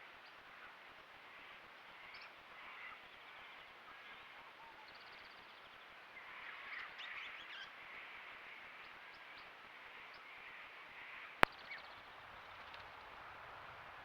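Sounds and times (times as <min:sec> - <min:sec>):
steady background hiss: 0:00.0 - 0:14.0
high bird calls: 0:11.0 - 0:14.0.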